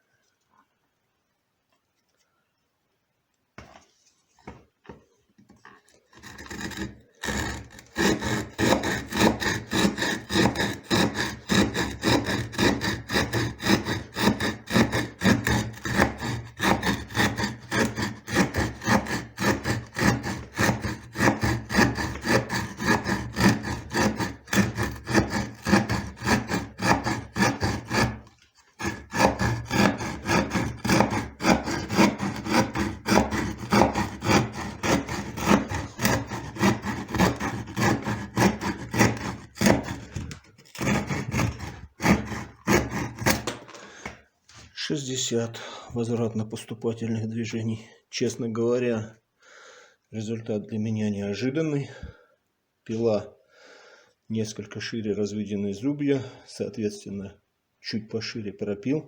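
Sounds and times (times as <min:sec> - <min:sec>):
saw blade sawing wood: 0:05.9 - 0:44.7.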